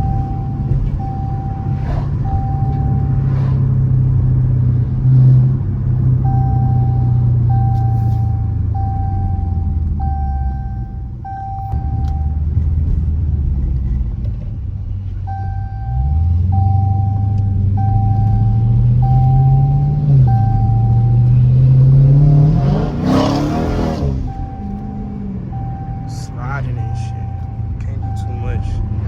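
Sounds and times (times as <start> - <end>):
short electronic beeps: 0.0 - 3.5, 6.2 - 12.4, 15.3 - 22.0, 23.1 - 29.0
car engine revving: 0.0 - 29.0.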